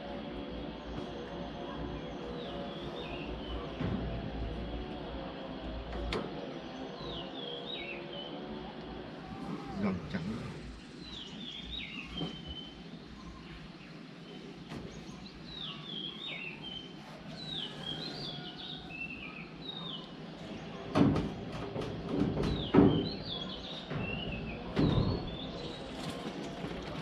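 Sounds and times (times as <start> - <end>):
songbird chirping: 0.0 - 27.0
loud knocks: 20.9 - 25.5.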